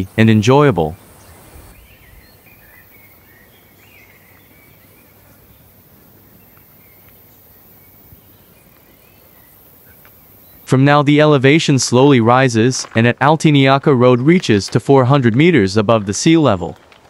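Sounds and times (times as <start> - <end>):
steady low hiss: 0.0 - 17.0
small bird chirps: 0.9 - 10.7.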